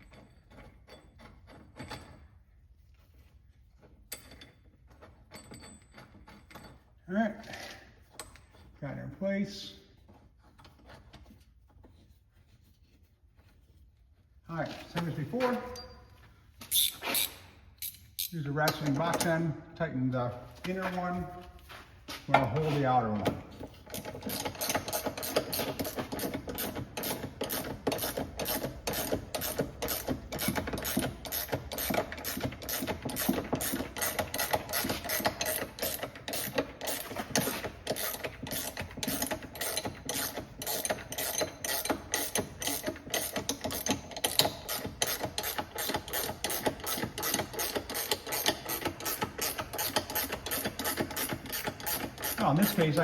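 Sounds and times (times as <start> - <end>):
ratcheting wrench clicking: 16.6 - 19.4, 23.8 - 53.0.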